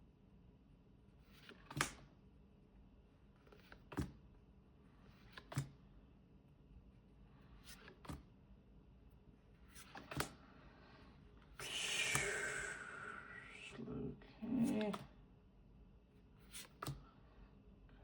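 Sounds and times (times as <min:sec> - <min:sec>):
card sliding on card: 0:07.6 - 0:08.2, 0:09.6 - 0:10.5, 0:11.5 - 0:12.8, 0:16.4 - 0:17.0.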